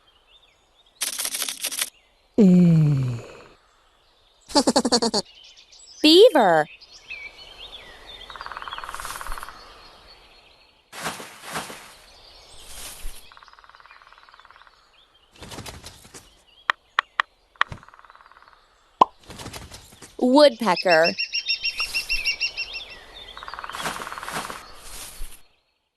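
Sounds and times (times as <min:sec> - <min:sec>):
birds chirping: 0:04.1 - 0:10.5, 0:11.9 - 0:25.4
sharp knocks: 0:17.0 - 0:17.9.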